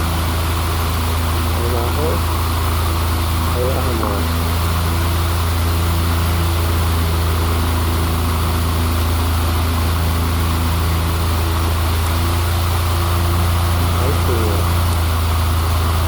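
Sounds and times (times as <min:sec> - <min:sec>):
electric fan motor humming: 0:00.0 - 0:16.0
fan air rushing: 0:00.0 - 0:16.0.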